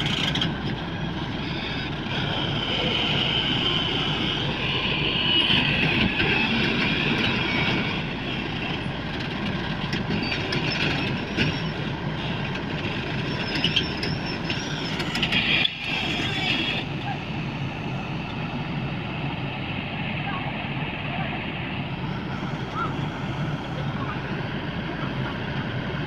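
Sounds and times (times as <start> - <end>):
heavy diesel machinery running: 0.0 - 26.0
high metallic squeals and clicks: 9.9 - 16.9.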